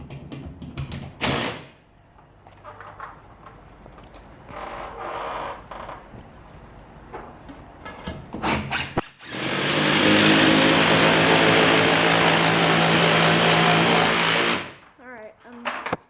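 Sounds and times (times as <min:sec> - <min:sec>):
electric power drill running: 0:09.2 - 0:14.8
knocks and clatters: 0:15.4 - 0:16.0.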